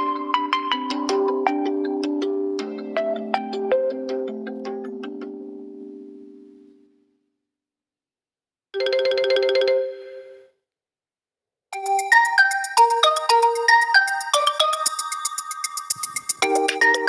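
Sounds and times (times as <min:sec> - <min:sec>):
phone ringtone melody: 0:11.8 - 0:17.0.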